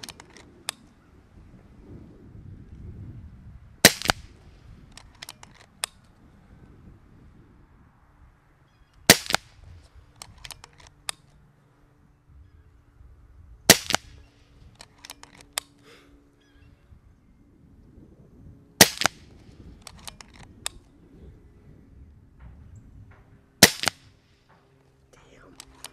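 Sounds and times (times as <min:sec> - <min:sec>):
light rifle clicks: 0:00.0 - 0:01.0, 0:04.9 - 0:06.2, 0:10.1 - 0:11.4, 0:13.7 - 0:15.8, 0:19.8 - 0:20.9, 0:24.7 - 0:25.9
air rifle shot crack: 0:03.8 - 0:04.4, 0:09.1 - 0:09.6, 0:13.7 - 0:14.2, 0:18.8 - 0:19.4, 0:23.6 - 0:24.2.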